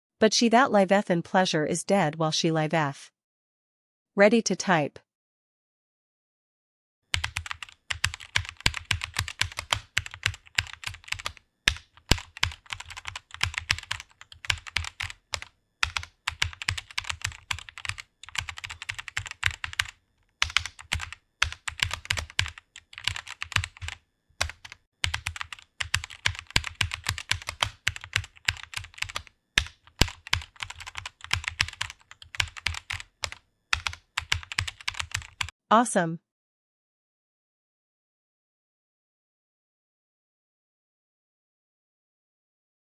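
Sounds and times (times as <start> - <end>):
fast keyboard typing: 7.1 - 35.5.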